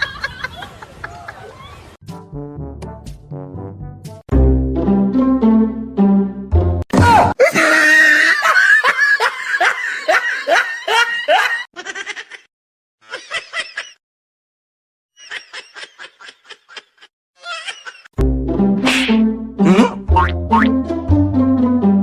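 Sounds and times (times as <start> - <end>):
person laughing hard: 7.4 - 14.0, 15.2 - 18.1, 18.8 - 20.7.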